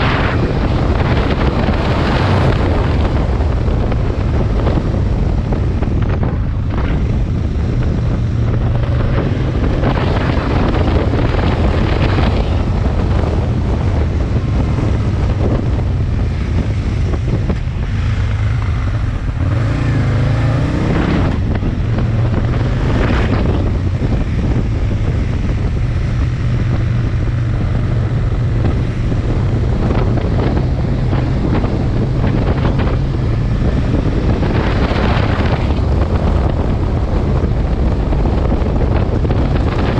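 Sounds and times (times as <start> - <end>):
motorcycle engine running: 0.0 - 39.9
wind noise on microphone: 0.0 - 39.9.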